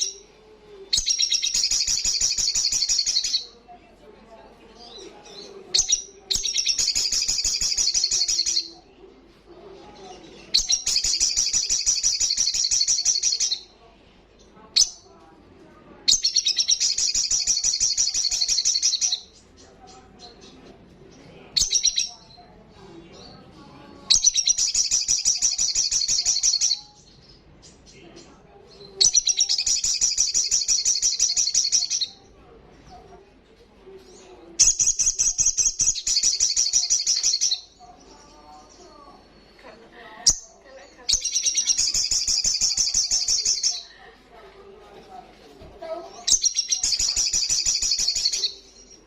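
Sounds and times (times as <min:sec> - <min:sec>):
sunbird trilling chatter: 0:00.9 - 0:03.6, 0:04.8 - 0:08.8, 0:10.1 - 0:13.7, 0:16.1 - 0:20.6, 0:28.9 - 0:32.2, 0:34.1 - 0:43.9, 0:46.0 - 0:49.0.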